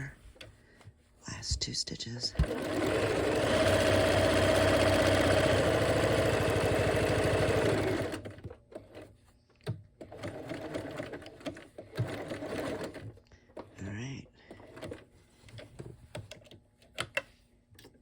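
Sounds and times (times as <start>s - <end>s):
sewing machine running: 2.4s - 9.0s, 10.1s - 13.1s.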